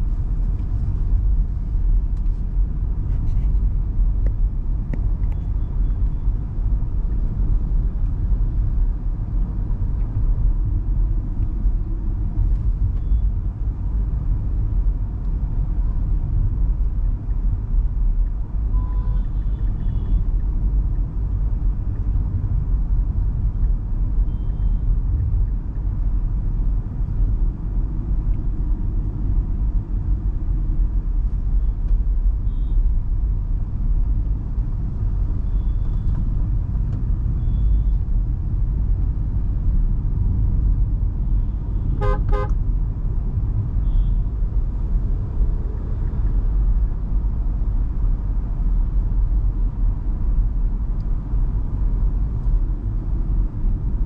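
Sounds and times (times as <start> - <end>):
car engine and road rumble: 0.0 - 54.0
car horn toot: 18.7 - 20.2, 41.8 - 42.6.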